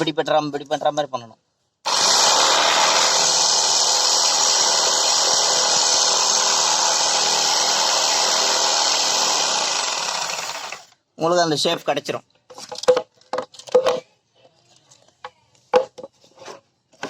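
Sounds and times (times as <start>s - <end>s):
jigsaw cutting: 1.9s - 10.9s.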